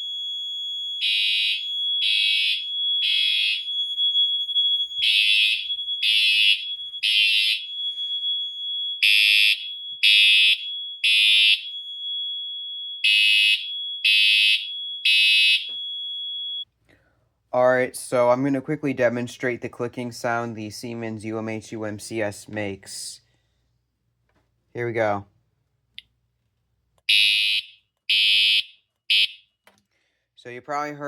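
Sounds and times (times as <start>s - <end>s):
fire alarm horn blasts: 0.0s - 16.7s, 27.1s - 29.5s
high continuous alarm tone: 0.0s - 16.7s.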